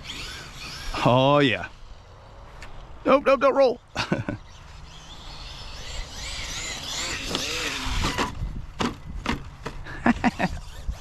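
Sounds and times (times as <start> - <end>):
electric motor whine: 0.0 - 2.5, 4.4 - 9.7.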